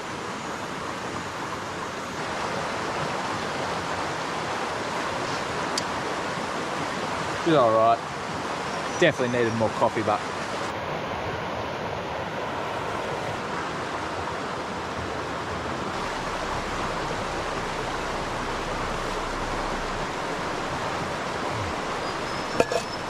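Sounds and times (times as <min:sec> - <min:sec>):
river rushing over rocks: 0:00.0 - 0:23.0.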